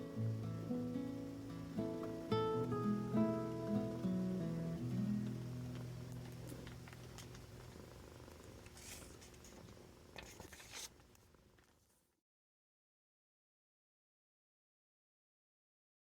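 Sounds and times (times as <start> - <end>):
acoustic guitar notes ringing: 0.0 - 6.5
cat purring: 2.7 - 10.2
brief rustles: 8.7 - 11.1.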